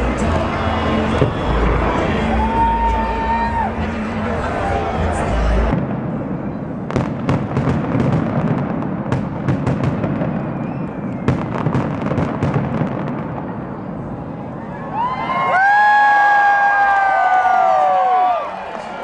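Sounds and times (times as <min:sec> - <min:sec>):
fireworks bangs and crackling: 0:00.0 - 0:02.4, 0:05.7 - 0:14.6
low rumble: 0:00.0 - 0:06.6.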